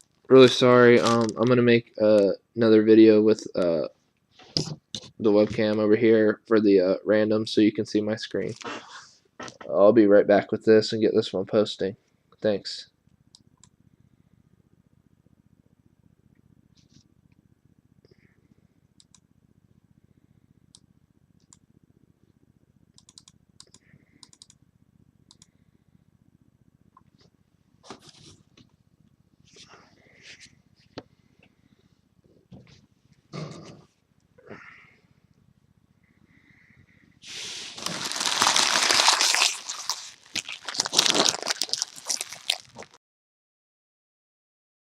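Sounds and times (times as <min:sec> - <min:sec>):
crinkling handling noise: 0:00.0 - 0:02.2, 0:08.4 - 0:09.7, 0:27.0 - 0:28.8, 0:37.2 - 0:43.0
low steady hum: 0:00.0 - 0:43.0
computer mouse clicks: 0:19.0 - 0:19.2, 0:22.9 - 0:24.6, 0:25.3 - 0:25.5
sharp crackles and clicks: 0:37.3 - 0:43.0.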